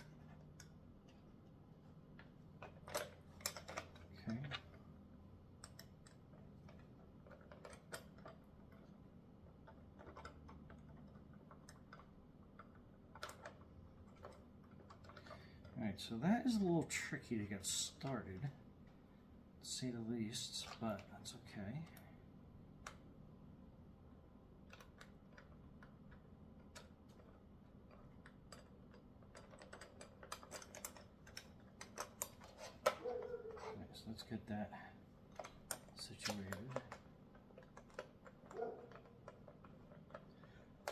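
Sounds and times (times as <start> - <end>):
low steady hum: 0.0 - 40.9
small screws clicking: 24.7 - 33.0.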